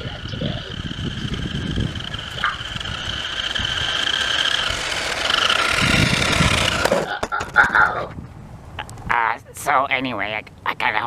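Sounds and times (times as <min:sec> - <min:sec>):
low rumble: 0:00.0 - 0:07.1
toy car electric motor whining: 0:00.0 - 0:07.3.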